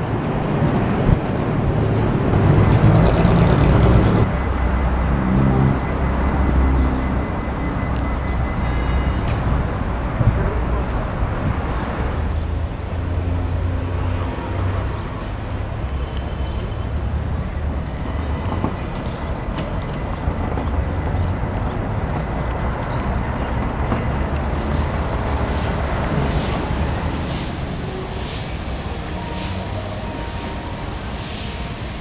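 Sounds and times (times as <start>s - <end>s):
traffic engine rumble: 0.0s - 32.0s
short hissing sounds: 24.5s - 32.0s.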